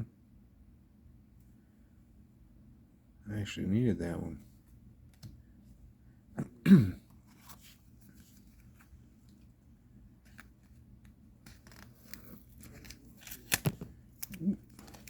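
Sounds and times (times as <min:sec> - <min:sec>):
man coughing: 0:06.4 - 0:07.1
trading cards rustling: 0:10.2 - 0:15.0.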